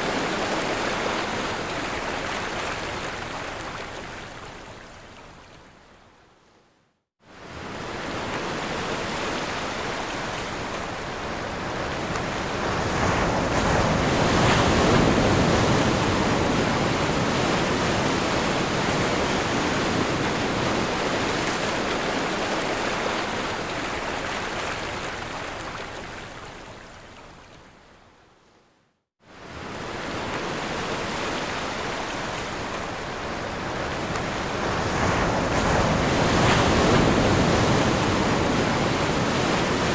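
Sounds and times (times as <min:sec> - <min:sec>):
ocean surf breaking on shore: 0:07.3 - 0:26.0, 0:29.3 - 0:39.9.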